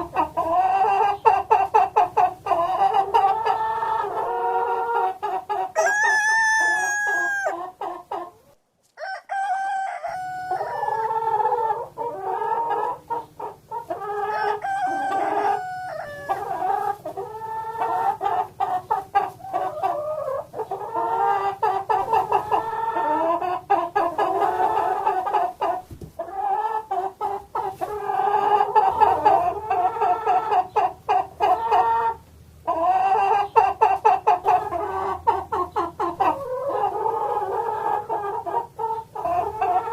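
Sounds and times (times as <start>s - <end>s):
chickens clucking: 0.0s - 39.9s
rooster crowing: 5.8s - 7.6s, 9.0s - 11.1s, 14.3s - 16.4s.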